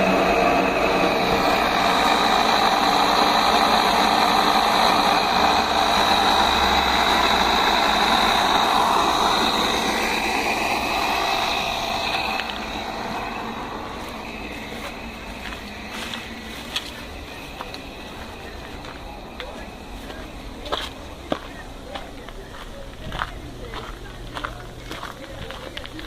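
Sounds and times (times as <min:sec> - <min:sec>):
hiss of moving air and water: 0:00.0 - 0:17.7
compressor pump running: 0:00.0 - 0:26.0
steady high whine: 0:00.0 - 0:26.0.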